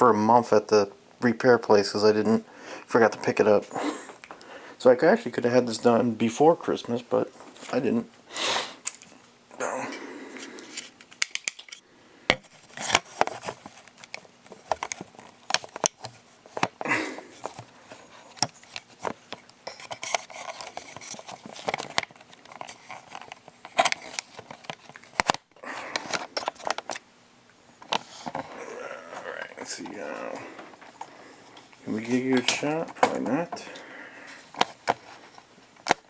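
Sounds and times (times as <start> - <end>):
tools and hard parts clacking: 11.0 - 11.8.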